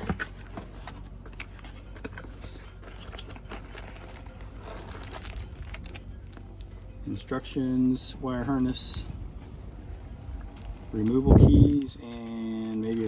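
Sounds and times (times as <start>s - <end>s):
packaging crinkling: 0.0s - 6.6s, 10.6s - 13.0s
steady low hum: 0.0s - 12.0s.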